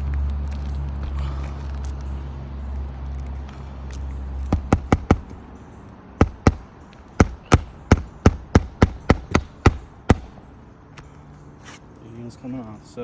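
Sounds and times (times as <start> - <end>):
tool striking roofing nails: 4.5 - 5.4, 6.2 - 10.4.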